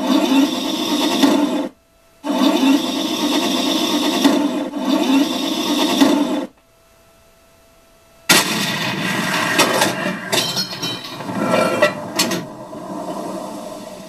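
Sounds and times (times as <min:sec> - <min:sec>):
noisy rumble: 0:08.2 - 0:14.0
sharp metallic clanks: 0:08.3 - 0:12.6.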